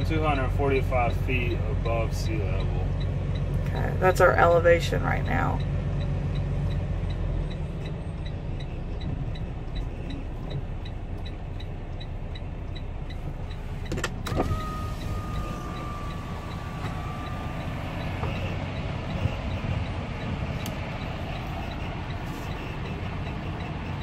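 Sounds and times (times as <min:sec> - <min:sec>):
diesel engine rumbling: 0:00.0 - 0:24.0
light ticking: 0:00.2 - 0:24.0
thin steady tone: 0:14.5 - 0:24.0
sharp clicks: 0:17.6 - 0:24.0.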